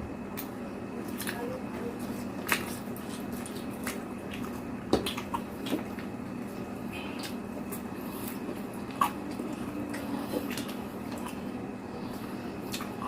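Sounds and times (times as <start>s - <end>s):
wet squishy chewing: 0.2s - 13.0s.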